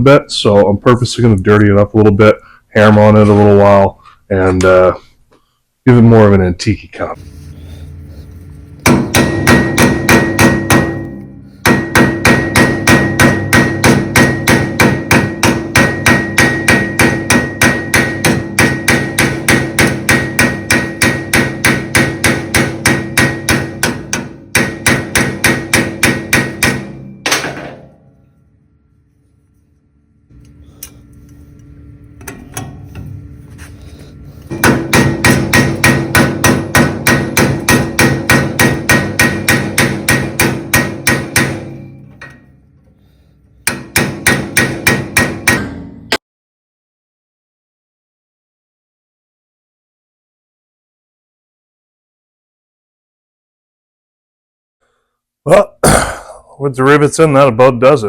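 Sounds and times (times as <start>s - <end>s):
hammer striking metal rivets: 8.8s - 28.1s, 34.5s - 42.6s, 43.6s - 46.0s.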